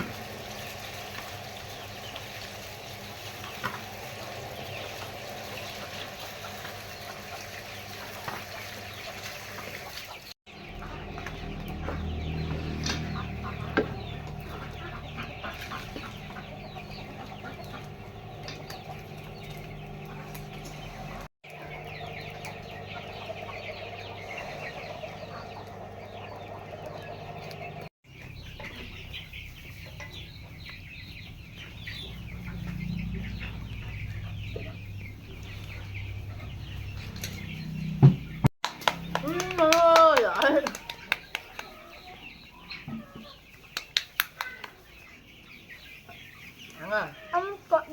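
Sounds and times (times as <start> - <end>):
chickens clucking: 0.0 - 47.9
low background hum: 10.6 - 41.1.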